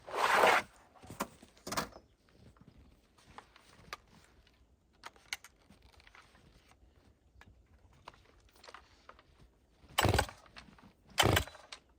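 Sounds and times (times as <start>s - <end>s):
chainsaw rasping burst: 10.0s - 10.3s, 11.2s - 11.5s.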